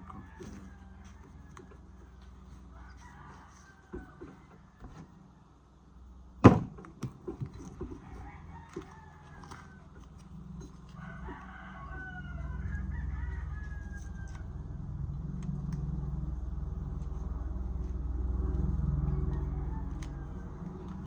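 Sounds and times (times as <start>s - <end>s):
steady low rumble: 8.0s - 21.0s.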